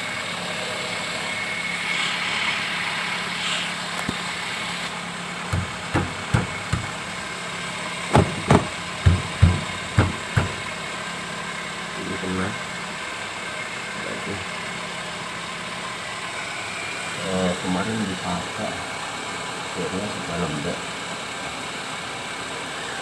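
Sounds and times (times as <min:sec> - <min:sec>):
car engine idling: 0:05.1 - 0:19.2
dull knocks: 0:05.5 - 0:07.3, 0:08.0 - 0:10.8.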